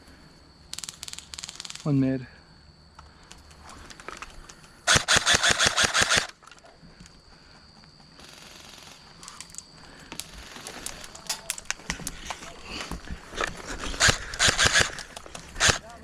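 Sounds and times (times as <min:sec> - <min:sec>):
airsoft gun full-auto burst: 0:04.9 - 0:06.4, 0:14.0 - 0:15.8.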